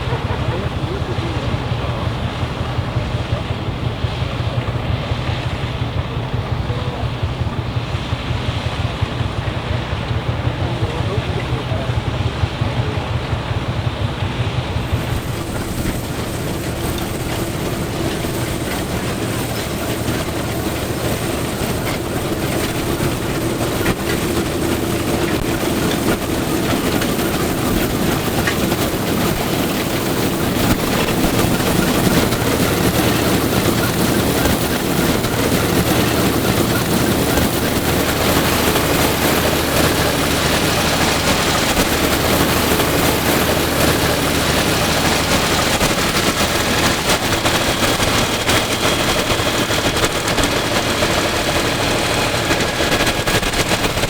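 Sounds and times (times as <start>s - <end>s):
combine threshing machinery: 0.0s - 54.0s
diesel tractor running under load: 0.0s - 54.0s
hissing rush: 14.8s - 50.1s.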